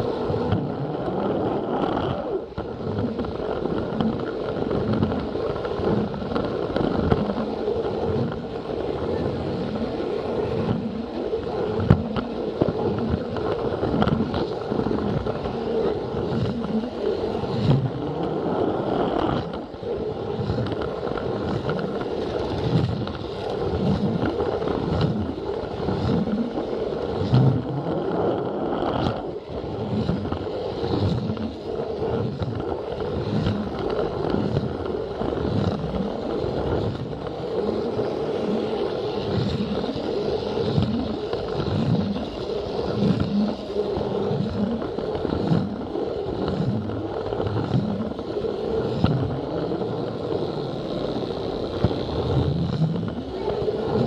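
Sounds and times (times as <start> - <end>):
wheels rattling over plastic track: 0.0 - 54.0
toy train motor whirring: 28.9 - 54.0.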